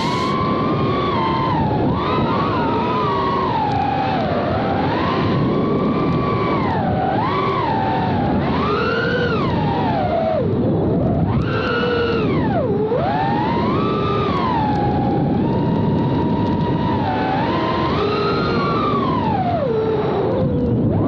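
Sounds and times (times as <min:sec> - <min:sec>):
drone motors whining: 0:00.0 - 0:00.4, 0:05.4 - 0:21.0.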